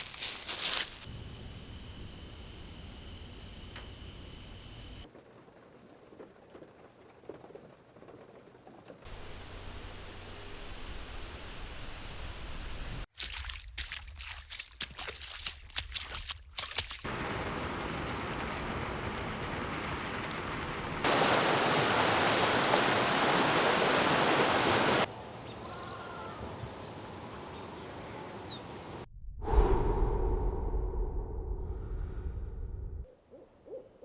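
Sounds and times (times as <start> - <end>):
steady rushing hiss: 21.0 - 25.5
faint bird chirps: 25.4 - 26.5.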